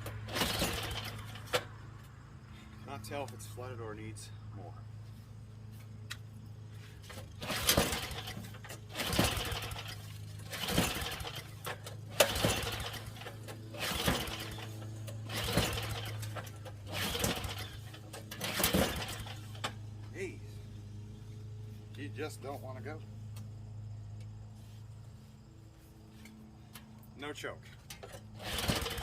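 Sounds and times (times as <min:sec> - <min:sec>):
snowblower engine cranking: 0:00.0 - 0:01.8, 0:07.0 - 0:20.0, 0:27.7 - 0:29.0.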